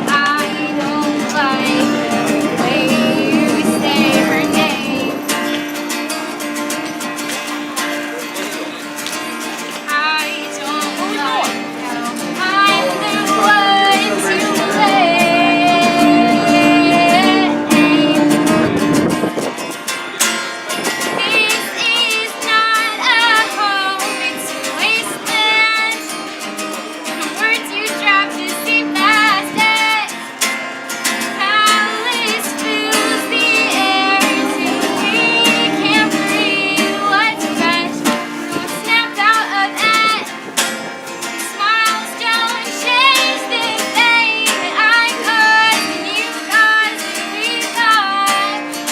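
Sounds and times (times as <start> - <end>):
person singing: 0.0 - 5.8, 9.9 - 18.8, 31.4 - 40.3, 41.5 - 48.7
sharp plucked notes: 0.0 - 7.8, 31.3 - 39.3
acoustic guitar: 0.0 - 48.9.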